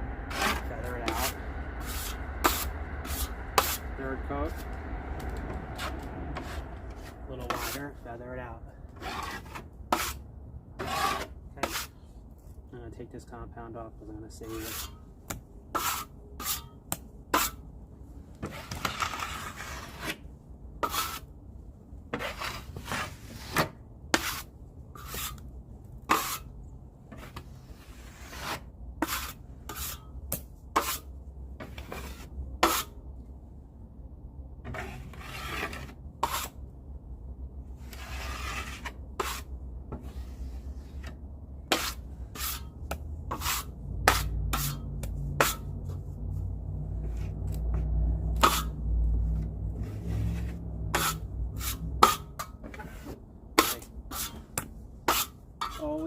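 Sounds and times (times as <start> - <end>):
taping knife scraping compound: 0.3 - 4.6, 5.8 - 8.0, 8.9 - 10.2, 10.8 - 12.1, 14.4 - 15.0, 15.7 - 17.6, 18.4 - 21.3, 22.1 - 33.0, 34.7 - 36.6, 37.8 - 46.0, 47.0 - 48.8, 49.4 - 56.0.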